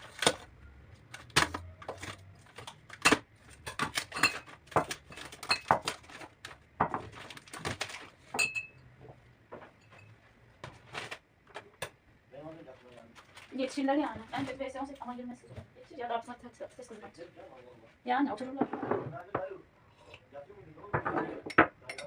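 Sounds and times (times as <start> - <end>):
dishes and utensils clinking: 3.1 - 6.0, 8.3 - 8.9, 20.9 - 22.0.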